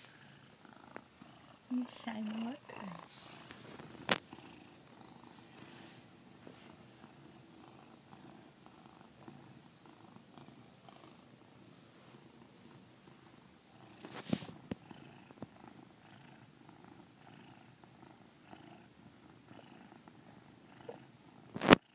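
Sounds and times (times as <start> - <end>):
pet snoring: 17.1 - 21.9.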